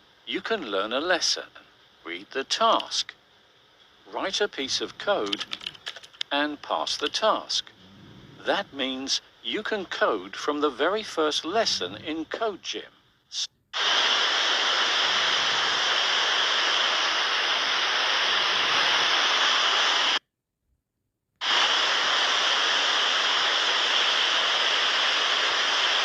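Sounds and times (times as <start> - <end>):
heavy rain hissing: 13.8 - 20.2, 21.4 - 26.0.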